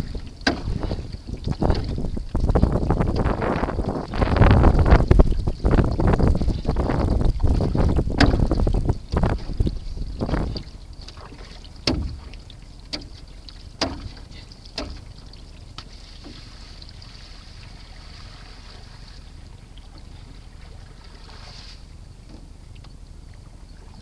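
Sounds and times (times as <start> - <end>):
wind noise: 0.0 - 10.8
paddle strokes splashing: 0.0 - 22.9.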